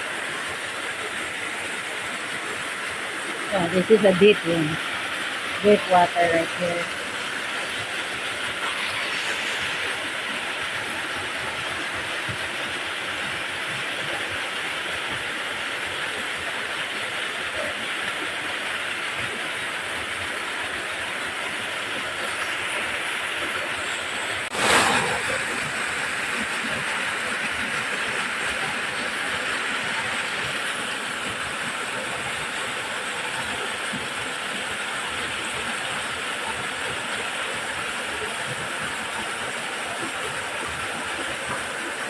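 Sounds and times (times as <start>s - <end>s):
waterfall rushing: 0.0s - 42.0s
short loud burst of noise: 24.5s - 25.7s.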